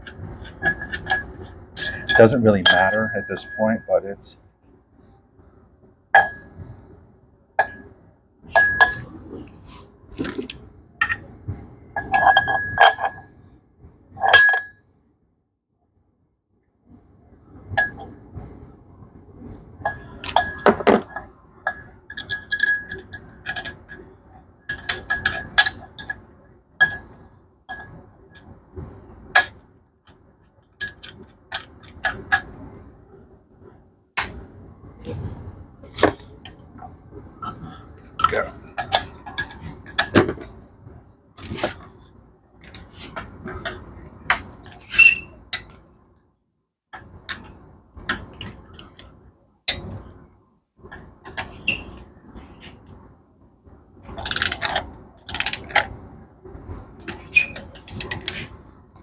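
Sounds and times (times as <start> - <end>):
steel parts clinking and ringing: 0.5 - 3.9, 8.6 - 9.1, 19.9 - 23.8, 24.7 - 25.8, 26.8 - 27.9, 54.2 - 55.8.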